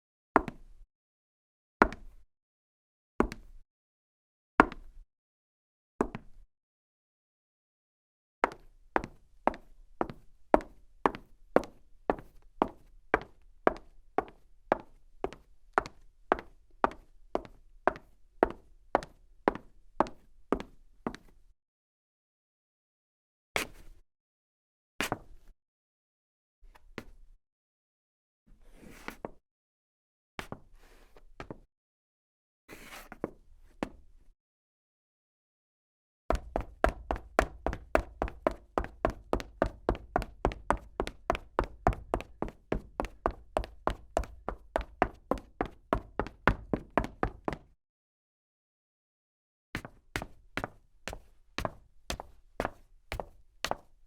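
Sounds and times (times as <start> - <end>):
woman's footsteps: 36.3 - 47.7, 49.8 - 53.9.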